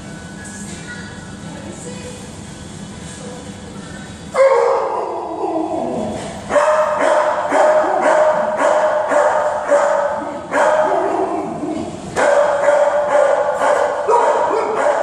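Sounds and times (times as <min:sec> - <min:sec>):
dogs barking and yelping: 0:04.4 - 0:15.0.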